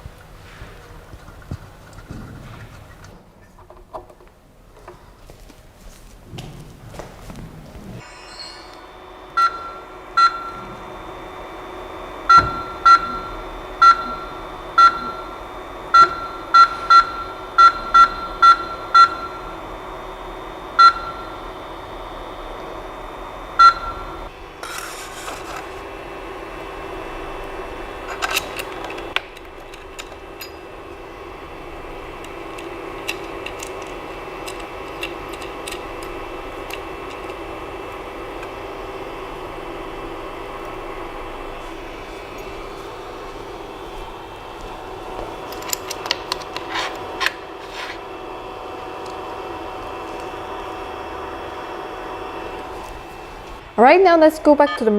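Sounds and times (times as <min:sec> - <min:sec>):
cooling fans humming: 0:00.0 - 0:54.9
short electronic beeps: 0:12.3 - 0:15.4, 0:16.0 - 0:19.4, 0:23.6 - 0:24.2.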